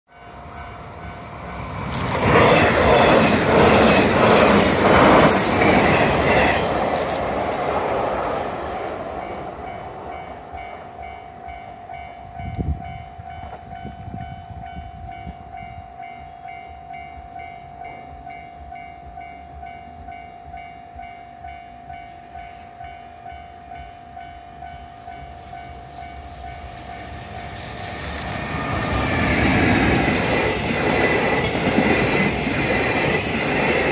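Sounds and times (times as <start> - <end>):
crossing warning bell ringing: 0.1 - 33.9
train approaching: 0.1 - 33.9
train wheels clattering on rails: 0.4 - 14.0, 24.6 - 33.9.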